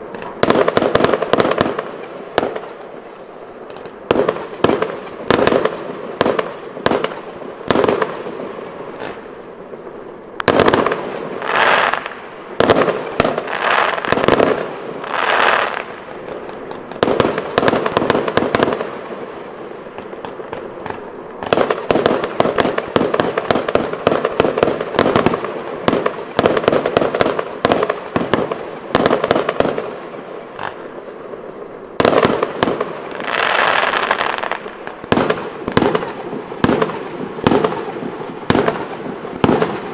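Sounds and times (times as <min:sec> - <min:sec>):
fireworks bangs and crackling: 0:00.0 - 0:39.9
rising shells hissing: 0:15.1 - 0:16.6, 0:30.8 - 0:32.0.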